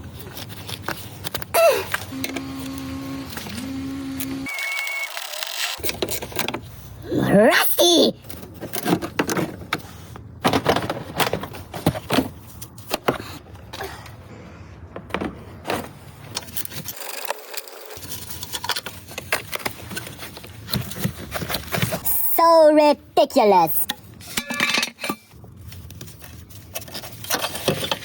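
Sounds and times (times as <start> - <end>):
hand tools clinking and knocking: 24.2 - 25.4.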